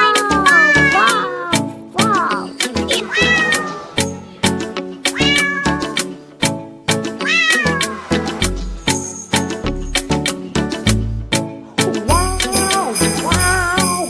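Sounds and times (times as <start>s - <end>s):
cat meowing: 0.0s - 6.1s, 7.2s - 8.6s.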